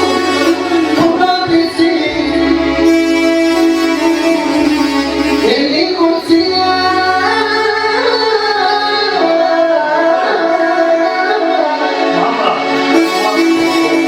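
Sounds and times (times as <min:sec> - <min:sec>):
violin accompaniment: 0:00.0 - 0:14.0
young man singing: 0:00.0 - 0:14.0.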